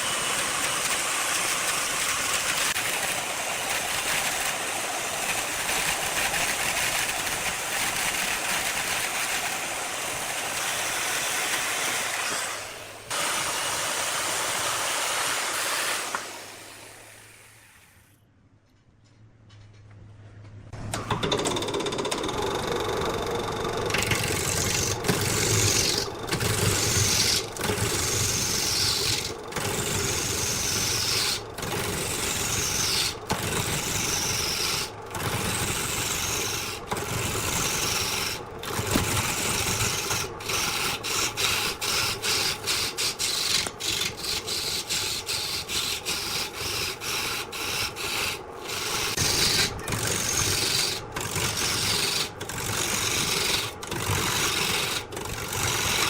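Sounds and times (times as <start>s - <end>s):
tool scraping wood on a lathe: 21.4s - 56.0s.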